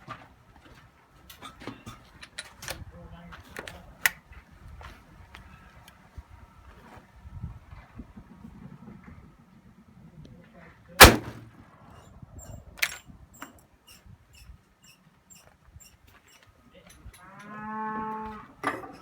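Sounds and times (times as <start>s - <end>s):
sharp clicks: 11.0s - 11.4s
rifle shot: 11.0s - 11.5s
cow mooing: 17.2s - 18.5s.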